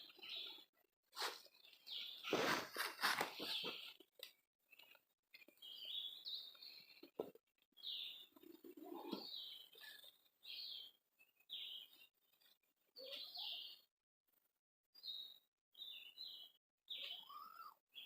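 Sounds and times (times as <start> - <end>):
small songbird chirping: 0.0 - 13.9, 15.0 - 18.0.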